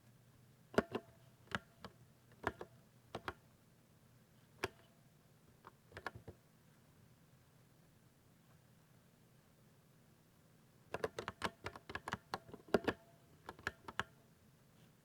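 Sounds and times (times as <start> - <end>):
mechanical keyboard keystrokes: 10.9 - 14.1.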